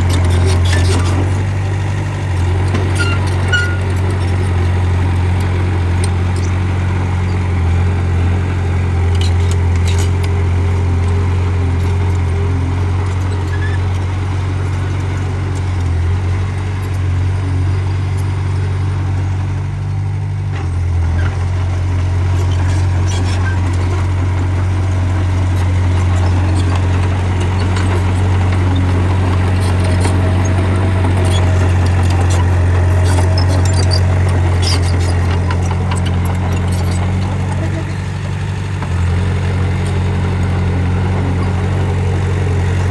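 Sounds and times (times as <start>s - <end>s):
bulldozer diesel engine running: 0.0s - 42.9s
faint clicks and clanks: 25.1s - 39.0s.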